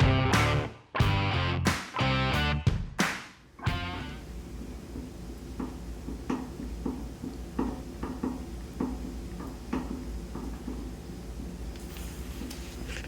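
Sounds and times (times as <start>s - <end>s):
chair creaking: 11.8s - 13.0s.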